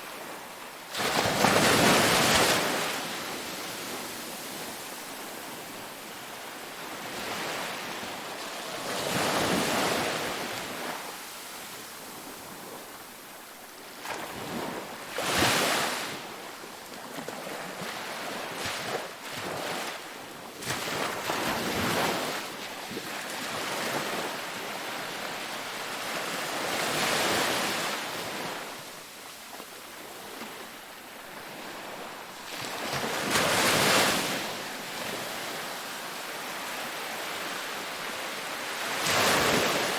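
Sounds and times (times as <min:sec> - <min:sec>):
sea waves breaking: 0:00.0 - 0:05.7, 0:14.0 - 0:16.3, 0:20.6 - 0:39.9.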